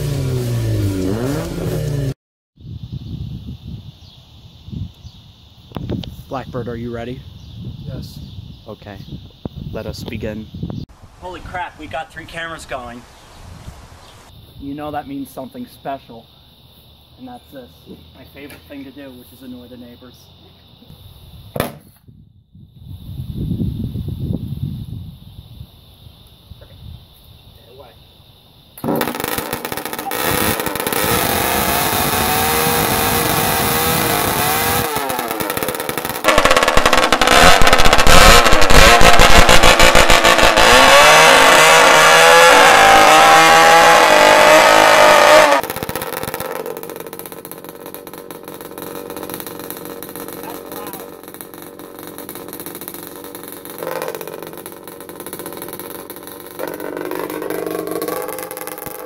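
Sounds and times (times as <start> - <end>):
engine droning through a vuvuzela: 28.8 - 59.0.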